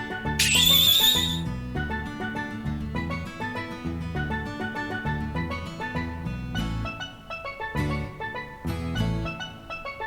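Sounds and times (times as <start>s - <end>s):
bright pitched notes: 0.4s - 1.4s.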